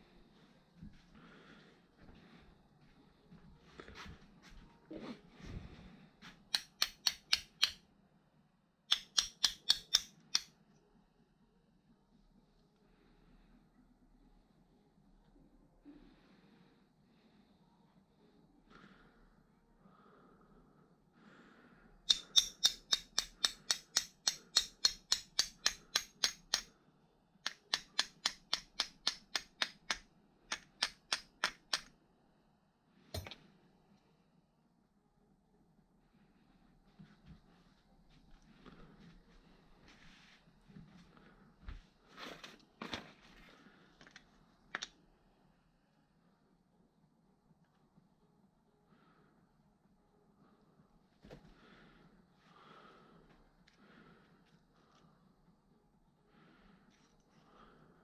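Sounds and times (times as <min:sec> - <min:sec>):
sharp clicks: 0:08.9 - 0:10.5.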